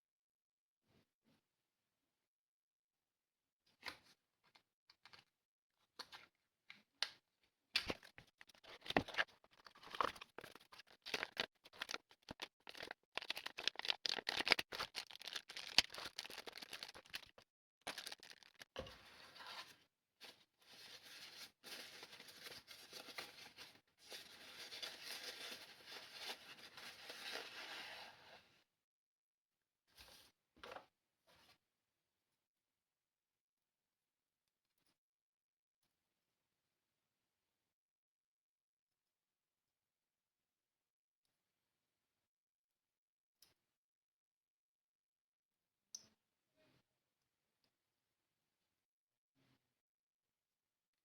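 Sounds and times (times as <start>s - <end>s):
packaging rustling: 7.9s - 18.9s, 20.7s - 28.0s
small parts clicking and scratching: 7.9s - 18.9s.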